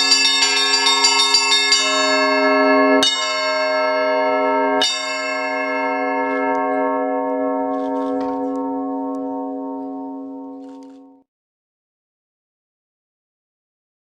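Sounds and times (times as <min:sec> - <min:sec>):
small bells striking quickly: 0:00.0 - 0:10.1
low hum: 0:00.0 - 0:11.2
large bell ringing: 0:00.0 - 0:11.3.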